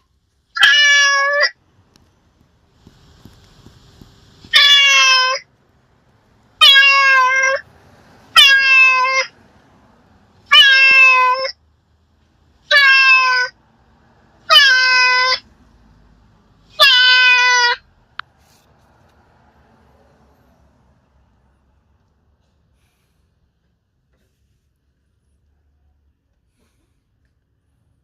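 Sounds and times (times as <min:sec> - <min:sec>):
cat meowing: 0:00.6 - 0:01.6, 0:04.5 - 0:05.5, 0:06.6 - 0:07.6, 0:08.4 - 0:09.4, 0:10.5 - 0:11.6, 0:12.7 - 0:13.6, 0:14.4 - 0:15.5, 0:16.7 - 0:17.8.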